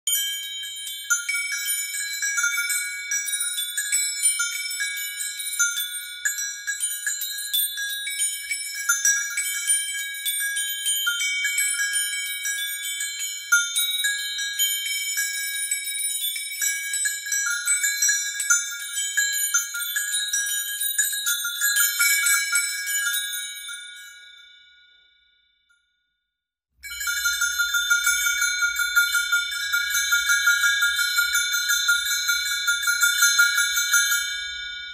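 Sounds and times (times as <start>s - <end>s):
metal chimes jangling: 26.8s - 34.9s.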